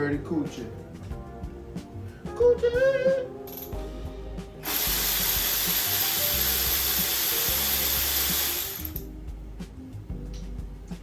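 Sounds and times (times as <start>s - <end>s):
quiet background music: 0.0s - 11.0s
loud steady hiss: 4.6s - 9.0s.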